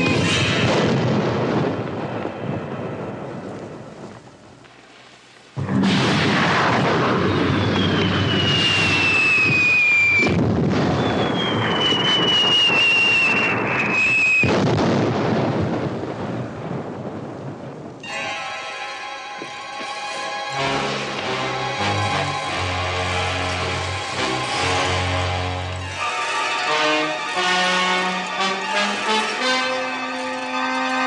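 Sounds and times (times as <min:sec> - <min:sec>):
music: 0:00.0 - 0:00.9, 0:18.0 - 0:31.0
firework blast: 0:00.0 - 0:18.2, 0:20.5 - 0:29.6
rumbling crackle: 0:00.0 - 0:18.2, 0:19.4 - 0:26.8
falling rocket whistles: 0:06.5 - 0:14.7.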